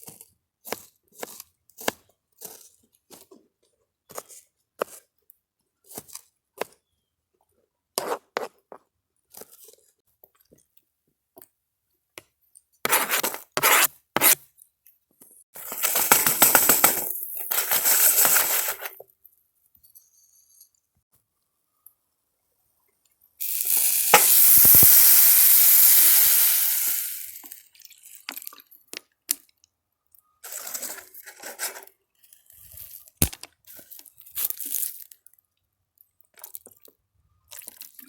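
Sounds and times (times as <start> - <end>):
food sizzling in a hot pan: 23.4 - 27.5.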